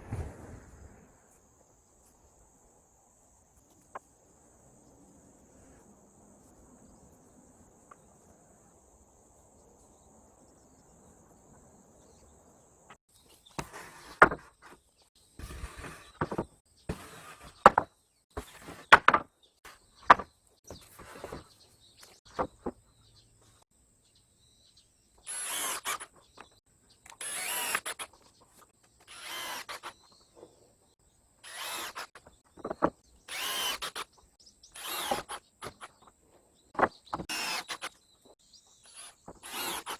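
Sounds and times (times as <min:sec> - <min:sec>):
crickets chirping: 0:00.0 - 0:13.0
tool scraping wood: 0:13.5 - 0:14.8, 0:15.4 - 0:21.6, 0:31.5 - 0:34.1, 0:34.8 - 0:36.1, 0:38.8 - 0:39.9
sharp wooden knocks: 0:15.4 - 0:19.3, 0:20.0 - 0:20.3, 0:32.6 - 0:34.0.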